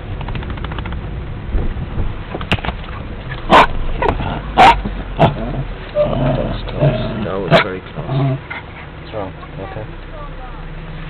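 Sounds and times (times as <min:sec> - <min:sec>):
car rumble: 0:00.0 - 0:11.0
dog barking: 0:03.5 - 0:04.9.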